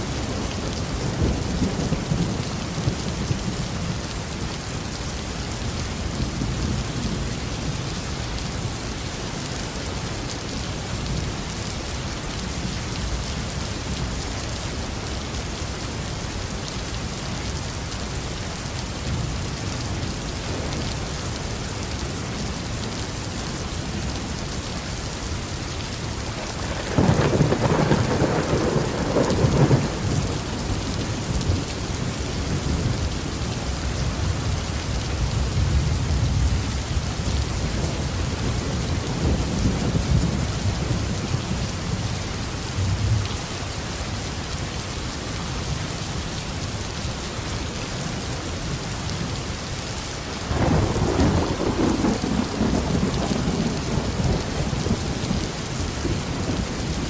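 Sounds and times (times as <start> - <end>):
thunder crack and rumbles: 0.0 - 4.0, 26.4 - 33.1, 50.4 - 57.0
heavy rain: 0.0 - 57.0.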